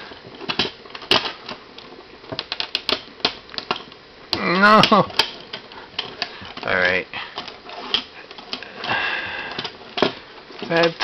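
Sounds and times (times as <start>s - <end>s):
person crying out: 4.4s - 5.2s.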